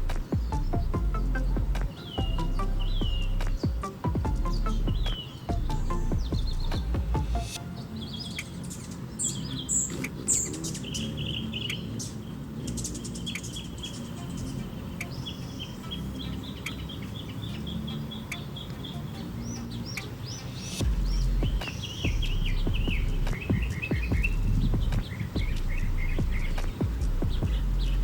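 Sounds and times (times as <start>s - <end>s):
low background rumble: 0.0s - 7.6s, 20.8s - 28.0s
birds chirping: 0.0s - 28.0s.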